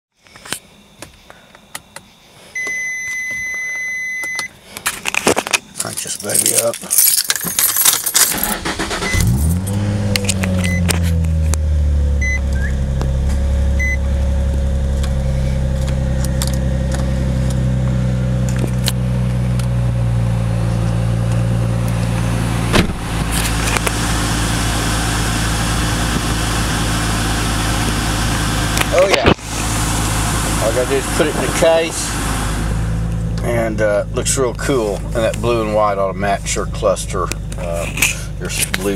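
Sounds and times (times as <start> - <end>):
short electronic beeps: 2.6 - 4.5, 9.0 - 9.3, 10.6 - 10.9, 12.2 - 12.9, 13.8 - 14.0
car engine cranking and idling: 2.6 - 38.9.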